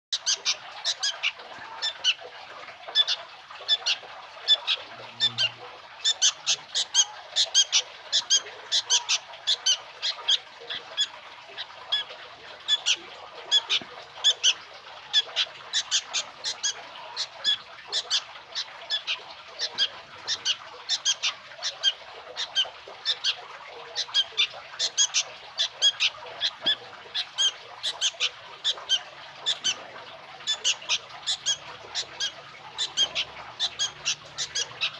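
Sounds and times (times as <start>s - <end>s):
bird chick chirping: 3.0s - 12.1s, 12.7s - 23.4s, 30.4s - 34.9s.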